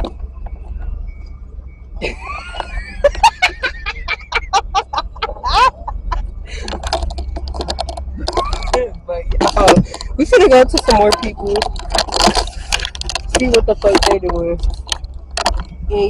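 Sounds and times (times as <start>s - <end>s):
people talking: 0.0s - 1.2s, 2.0s - 16.0s
low rumble: 0.0s - 16.0s
people laughing: 2.0s - 6.9s.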